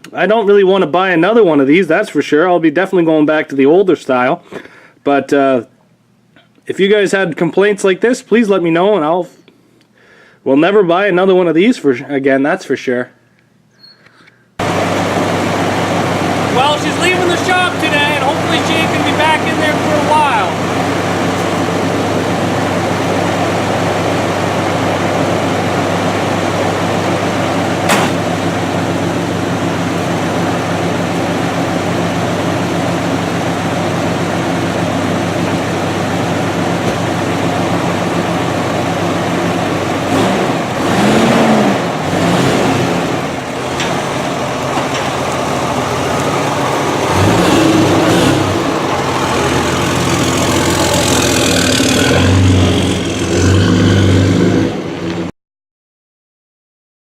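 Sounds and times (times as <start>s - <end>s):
diesel engine idling and revving: 14.6s - 55.3s.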